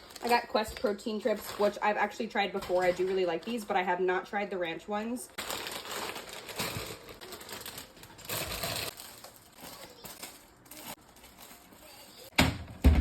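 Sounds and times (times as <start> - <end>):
packaging rustling and crinkling: 0.0 - 3.7, 5.3 - 12.3.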